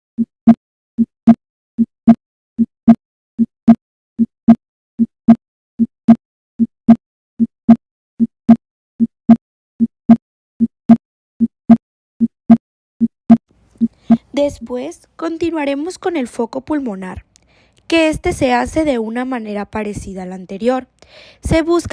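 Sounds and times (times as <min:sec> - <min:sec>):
heartbeat through stethoscope: 0:19.9 - 0:20.3, 0:21.4 - 0:21.9.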